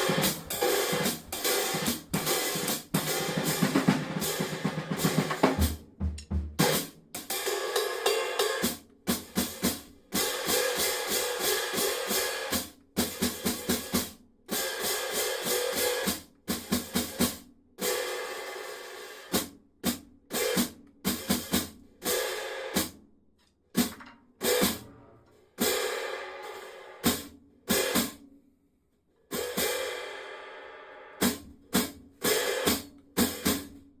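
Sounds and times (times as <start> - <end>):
hi-hat cymbal strikes: 0.0 - 6.8.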